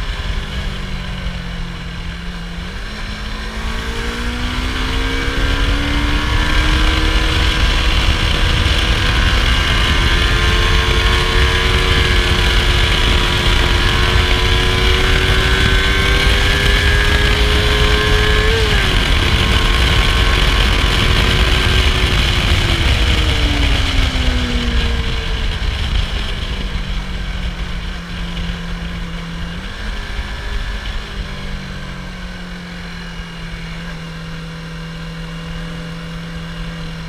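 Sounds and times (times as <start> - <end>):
heavy low rumble: 0.0 - 35.5
motorcycle engine running: 0.0 - 37.0.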